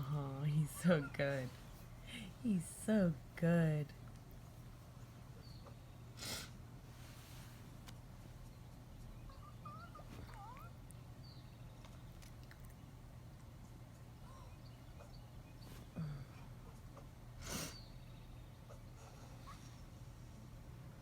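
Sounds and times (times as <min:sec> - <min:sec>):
steady low hum: 0:00.0 - 0:21.0
cat chirping softly: 0:08.4 - 0:12.8, 0:13.9 - 0:15.3.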